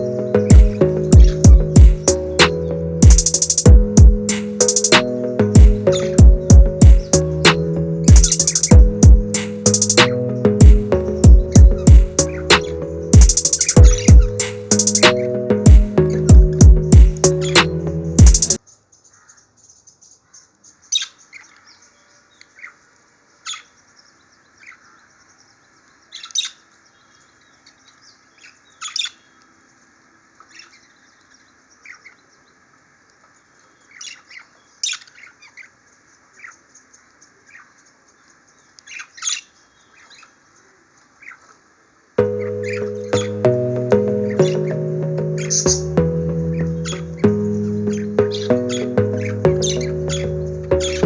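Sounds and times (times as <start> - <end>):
birds twittering softly: 0.0 - 43.3
birds squawking and chirping: 5.8 - 7.4.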